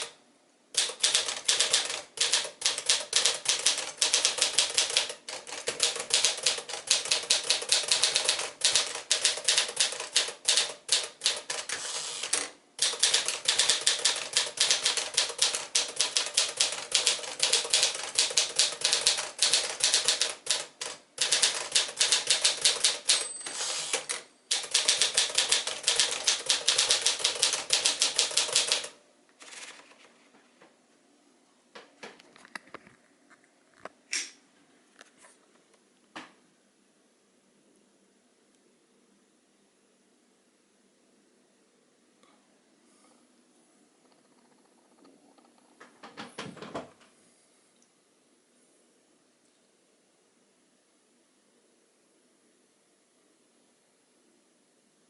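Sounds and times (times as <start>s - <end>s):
typewriter keystroke clacks: 0.8s - 29.0s.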